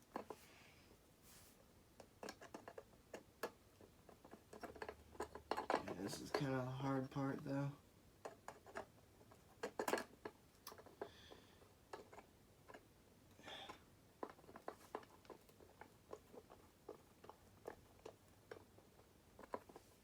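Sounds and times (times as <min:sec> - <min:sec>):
small clicks and taps: 0:02.0 - 0:06.6, 0:08.2 - 0:12.9.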